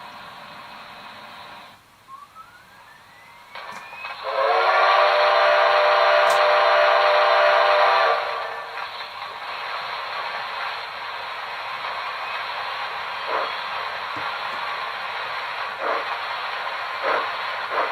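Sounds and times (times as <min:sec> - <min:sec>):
steady hiss: 0:00.0 - 0:17.9
steam whistle blast: 0:02.1 - 0:08.8.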